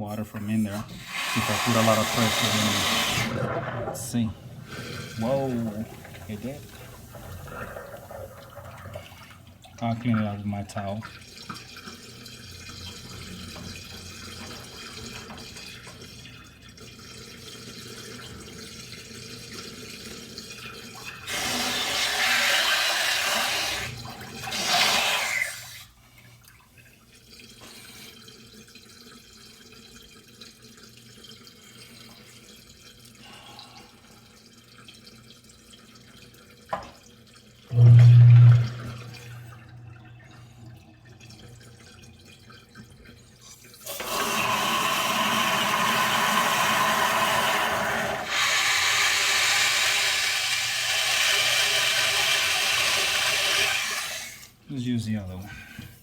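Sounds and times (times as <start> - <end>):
water gushing from hose into sink: 0.0 - 56.0
loud low hum: 37.7 - 39.7.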